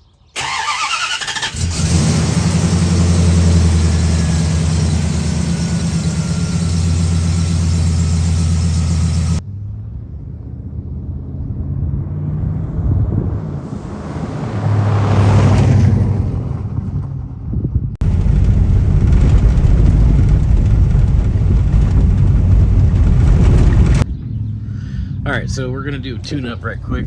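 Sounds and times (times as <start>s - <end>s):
car engine idling: 0.4s - 9.4s, 18.0s - 24.0s
car starter cranking: 0.4s - 9.4s, 18.0s - 24.0s.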